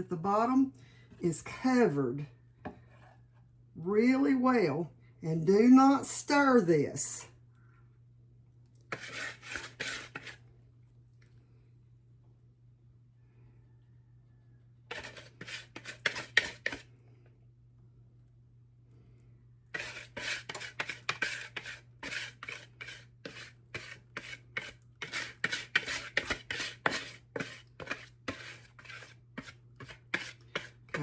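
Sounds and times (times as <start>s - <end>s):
utensil scraping mixing bowl: 8.9s - 10.4s, 14.9s - 16.8s, 19.7s - 31.0s.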